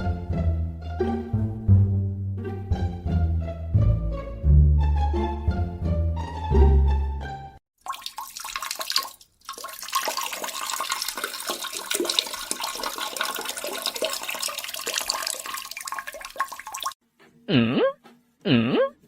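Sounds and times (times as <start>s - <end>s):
small bubbling splashes: 7.8s - 17.0s.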